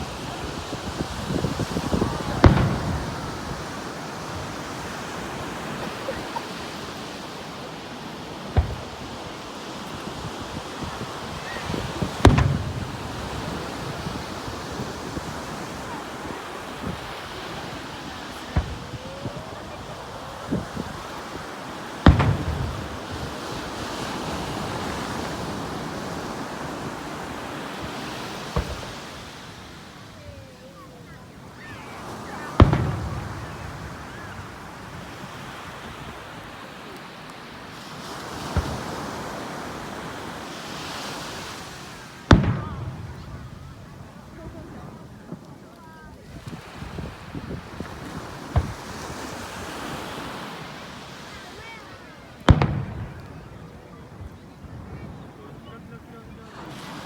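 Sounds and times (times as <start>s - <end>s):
firework shells booming: 0.0s - 30.4s, 31.4s - 35.5s, 37.9s - 40.4s, 42.2s - 45.5s, 47.6s - 49.2s, 52.4s - 55.7s
firework shell bursts: 8.6s - 10.1s, 11.3s - 14.3s, 22.0s - 23.8s.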